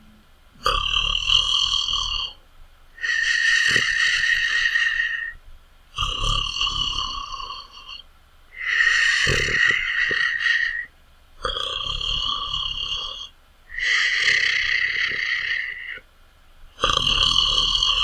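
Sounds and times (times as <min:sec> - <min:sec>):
loud snoring: 0:00.6 - 0:02.4, 0:03.0 - 0:05.4, 0:06.0 - 0:08.0, 0:08.6 - 0:16.0, 0:16.8 - 0:18.0.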